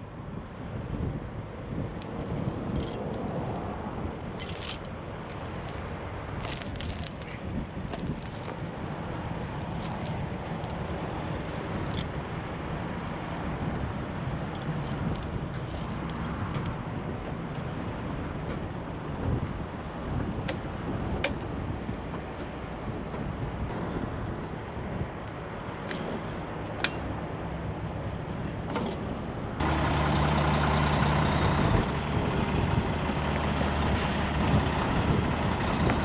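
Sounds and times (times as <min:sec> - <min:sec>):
steady low rumble: 0:00.0 - 0:36.0
snow chains clinking and jangling: 0:02.2 - 0:03.7, 0:04.4 - 0:04.9, 0:06.4 - 0:12.1, 0:14.2 - 0:17.0, 0:25.3 - 0:27.1, 0:28.7 - 0:29.3.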